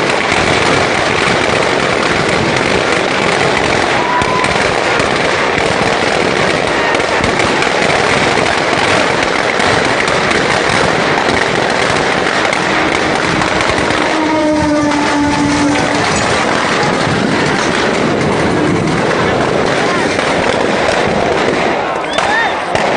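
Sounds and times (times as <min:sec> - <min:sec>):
firecrackers crackling: 0:00.0 - 0:22.9
steady horn-like tone: 0:12.6 - 0:16.2.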